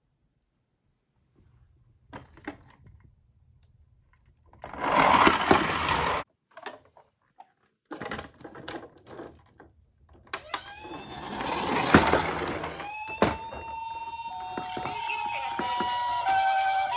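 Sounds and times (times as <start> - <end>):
toy car rolling rattle: 4.6 - 6.8, 7.9 - 16.9.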